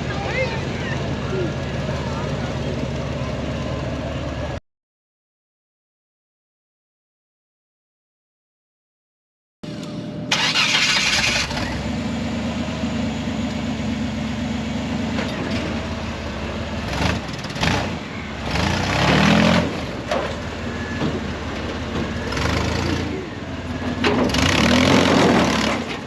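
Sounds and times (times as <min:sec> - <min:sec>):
buggy engine running: 0:00.0 - 0:04.6, 0:09.7 - 0:26.0
loud engine burst: 0:10.3 - 0:12.1, 0:24.0 - 0:26.0.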